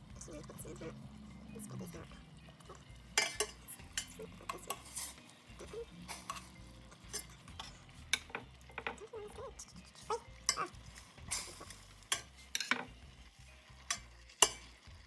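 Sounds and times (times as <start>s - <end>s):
utensil scraping against a pan: 2.7s - 13.0s, 13.7s - 14.9s.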